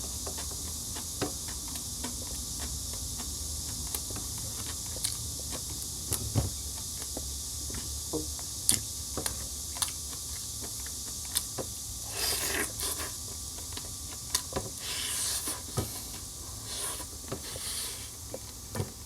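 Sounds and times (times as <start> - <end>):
sharp eating clicks: 0.2 - 7.2
short hissy rustles: 14.8 - 18.2.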